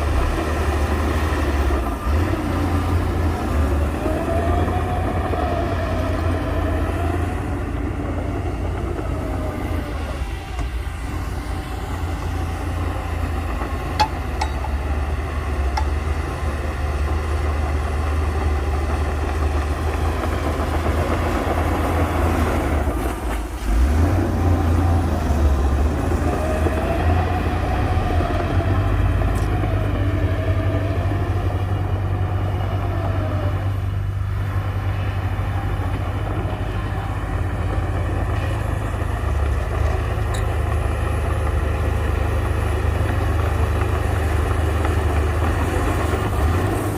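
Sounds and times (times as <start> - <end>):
diesel engine rumbling: 0.0 - 46.9
sharp metal clanks: 14.0 - 14.9.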